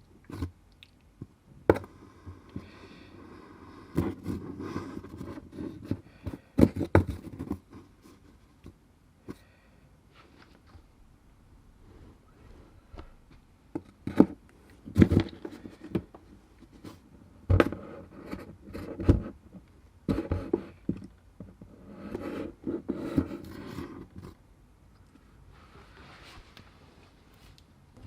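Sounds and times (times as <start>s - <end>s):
scratching and rubbing: 21.6s - 24.4s.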